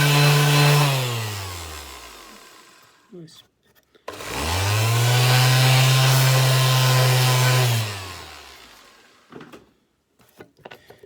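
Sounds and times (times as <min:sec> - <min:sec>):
electric motor humming: 0:00.0 - 0:03.0, 0:04.1 - 0:09.2.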